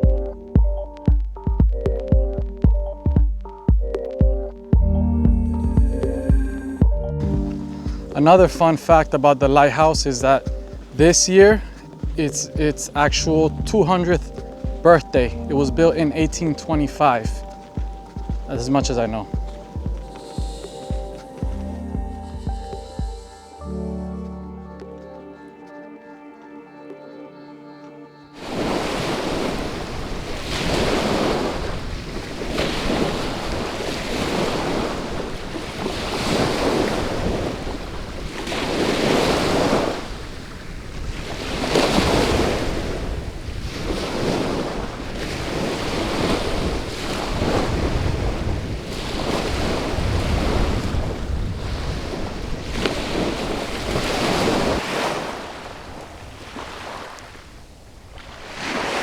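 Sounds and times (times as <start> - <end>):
small waves breaking on beach: 7.5 - 13.0, 13.7 - 21.5, 28.4 - 59.0
wind on microphone: 28.4 - 59.0.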